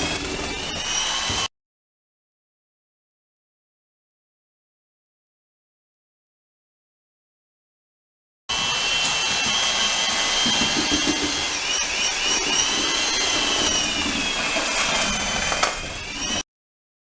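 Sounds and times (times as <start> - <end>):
electric mixer motor whining: 0.0 - 1.5, 8.5 - 16.4.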